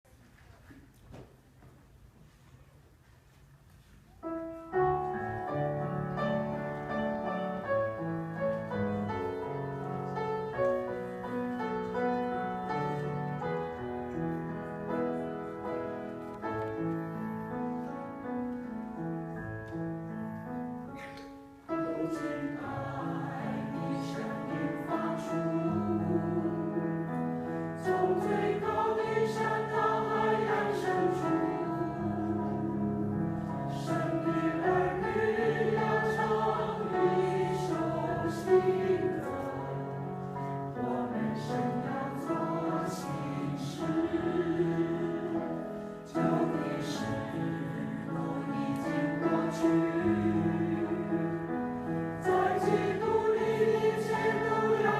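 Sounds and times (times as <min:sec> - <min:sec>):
choir singing: 0:21.7 - 0:54.9.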